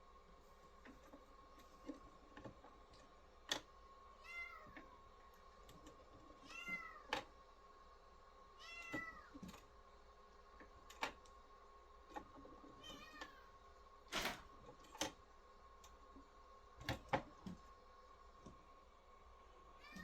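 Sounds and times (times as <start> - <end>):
faint high hum: 0.0 - 20.0
cat meowing: 4.2 - 4.8, 6.4 - 7.1, 8.6 - 9.4, 12.8 - 13.5, 19.8 - 20.0.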